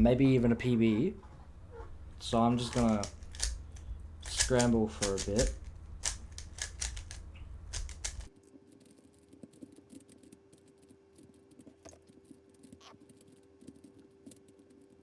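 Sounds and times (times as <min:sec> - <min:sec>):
faint steady hum: 0:00.0 - 0:15.0
plastic puzzle cube clicking: 0:02.6 - 0:09.0.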